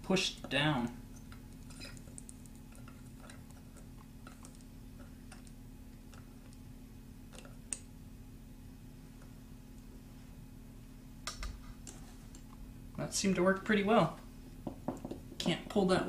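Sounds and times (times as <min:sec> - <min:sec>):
steady low hum: 0:00.0 - 0:16.0
small clicks and taps: 0:00.4 - 0:06.6.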